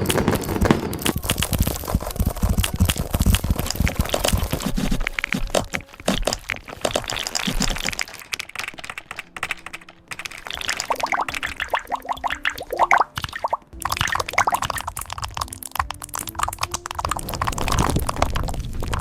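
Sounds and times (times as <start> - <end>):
keyboard typing clicks: 5.6 - 12.6, 13.8 - 18.0.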